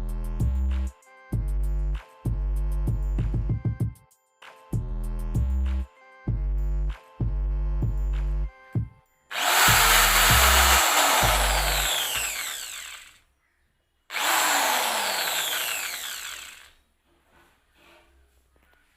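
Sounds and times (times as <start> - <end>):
electric drill whirring: 9.3 - 13.2, 14.1 - 16.8.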